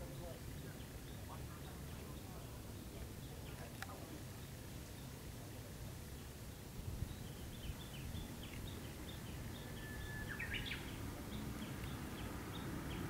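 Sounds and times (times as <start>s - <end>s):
small birds chirping: 0.0s - 5.4s, 6.0s - 13.0s.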